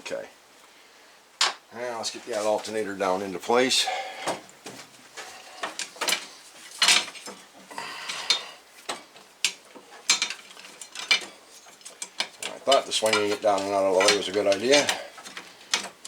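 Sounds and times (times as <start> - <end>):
metal clinking and knocking: 5.6 - 16.0.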